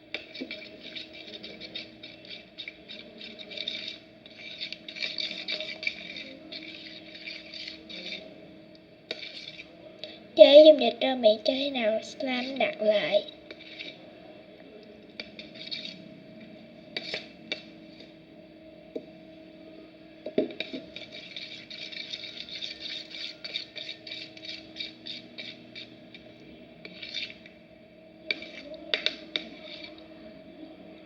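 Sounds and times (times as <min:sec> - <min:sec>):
faint steady hum: 0:00.0 - 0:31.0
stirrer scraping and tapping slime: 0:00.1 - 0:08.4, 0:09.1 - 0:14.0, 0:14.8 - 0:16.0, 0:16.9 - 0:18.1, 0:20.3 - 0:27.6, 0:28.2 - 0:30.1.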